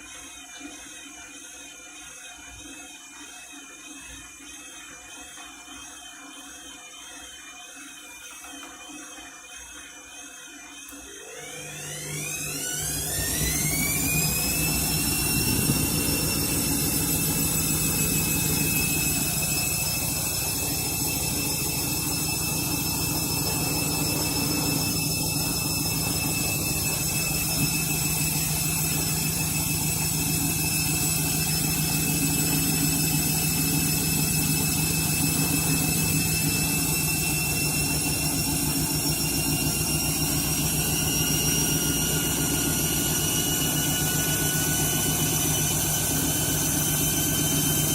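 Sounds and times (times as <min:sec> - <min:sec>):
washing machine motor whine: 0:00.0 - 0:47.9
spinning drum rumble: 0:12.9 - 0:47.9.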